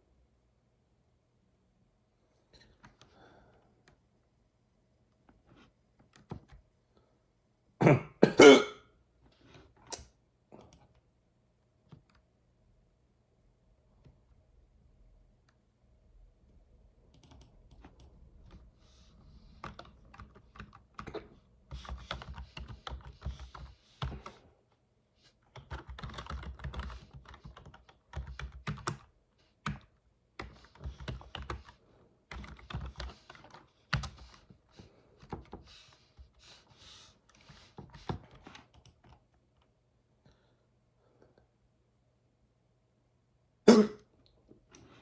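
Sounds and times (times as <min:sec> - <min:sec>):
typing on a keyboard: 0:06.0 - 0:06.6, 0:17.1 - 0:18.6, 0:19.6 - 0:24.4, 0:25.4 - 0:36.6, 0:37.3 - 0:39.4.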